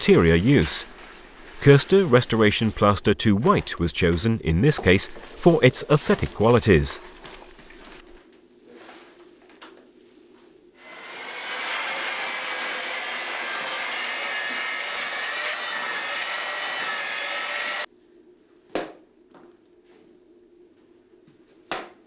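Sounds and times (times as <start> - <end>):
motor whining: 10.9 - 17.9.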